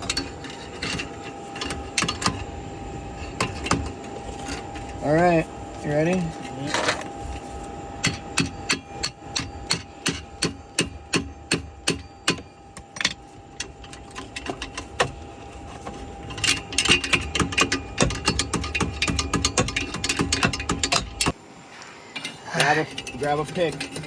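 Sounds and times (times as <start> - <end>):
hammer striking metal: 8.0 - 13.2.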